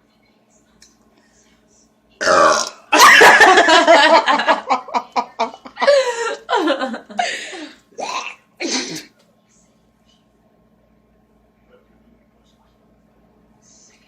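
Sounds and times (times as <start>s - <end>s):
people laughing loudly: 3.0s - 7.6s.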